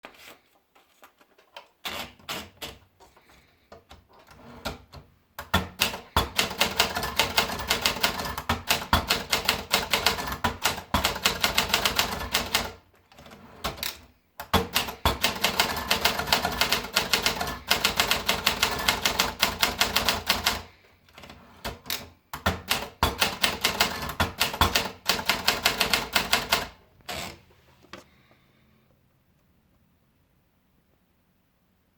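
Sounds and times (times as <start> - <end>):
manual typewriter typing: 4.2 - 27.4.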